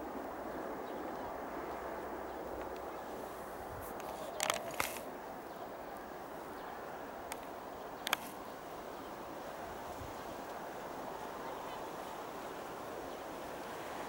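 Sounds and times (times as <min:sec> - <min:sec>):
outdoor background noise: 0:00.0 - 0:14.0.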